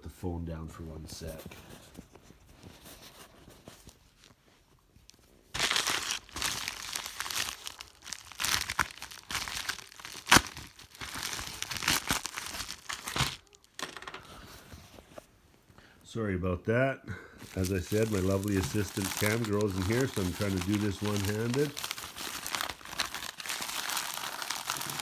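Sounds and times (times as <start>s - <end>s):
packaging being torn and crinkled: 5.6s - 13.8s, 17.4s - 25.0s.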